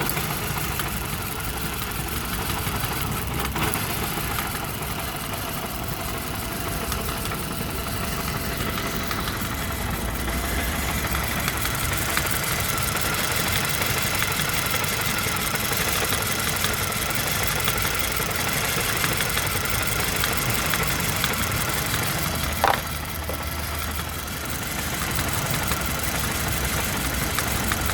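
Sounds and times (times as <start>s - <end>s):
engine idling with misfire: 0.0s - 27.9s.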